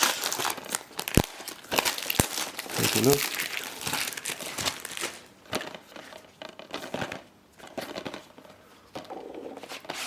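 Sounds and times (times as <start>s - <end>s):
plastic crinkling and rustling: 0.0s - 10.0s.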